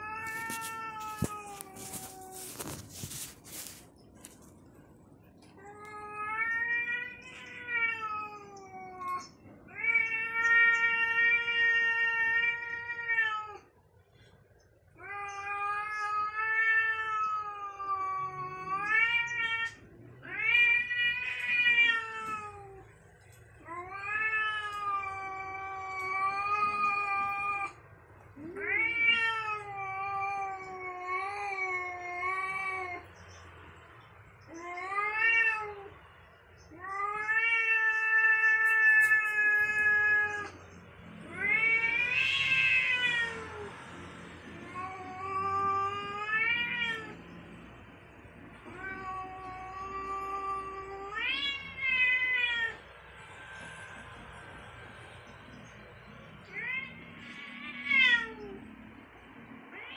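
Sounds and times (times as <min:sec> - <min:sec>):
cat yowling: 0:23.6 - 0:27.8, 0:28.4 - 0:33.1, 0:48.6 - 0:52.9.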